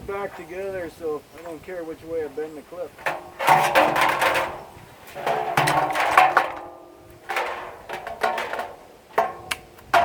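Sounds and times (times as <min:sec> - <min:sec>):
metal drum clattering and clanking: 0:03.0 - 0:10.0.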